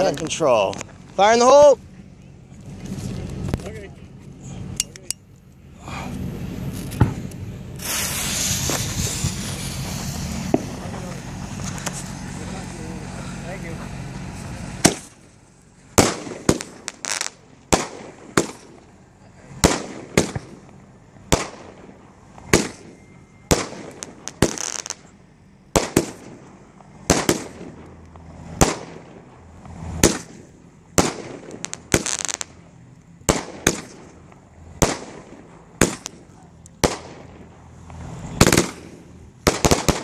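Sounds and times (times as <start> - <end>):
hissing firework crackle: 5.4 - 40.0
firework bangs: 6.5 - 15.3, 15.9 - 40.0
firework launch thumps: 6.7 - 12.0, 14.8 - 15.2, 19.6 - 20.7.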